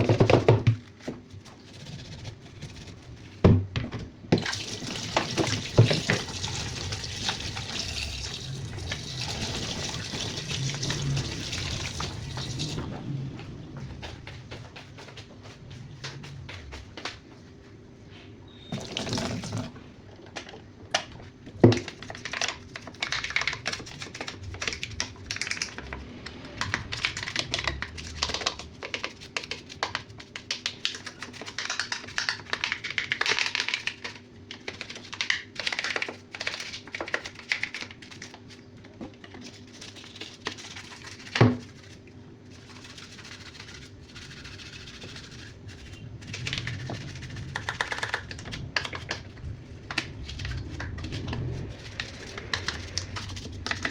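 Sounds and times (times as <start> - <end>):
scratchy scrubbing: 0.9 - 3.4, 39.4 - 53.9.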